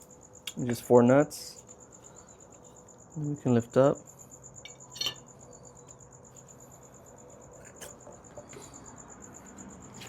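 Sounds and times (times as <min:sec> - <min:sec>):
light metallic clink: 0:04.6 - 0:05.3.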